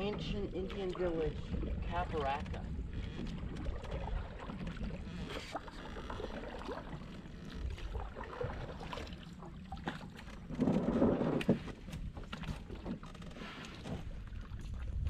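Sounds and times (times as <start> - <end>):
paddle dipping in water: 0.0 - 15.0.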